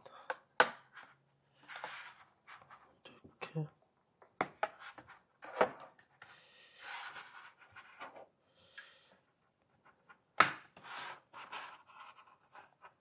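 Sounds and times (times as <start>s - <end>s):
plastic scraping and rubbing: 0.9s - 2.8s, 9.8s - 13.0s.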